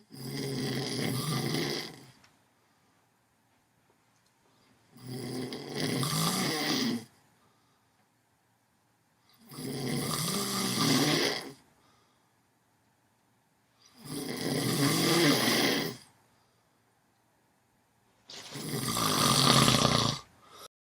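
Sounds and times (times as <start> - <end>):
person snoring: 0.0 - 2.2, 4.9 - 7.1, 9.4 - 11.7, 13.9 - 16.1, 18.3 - 20.7.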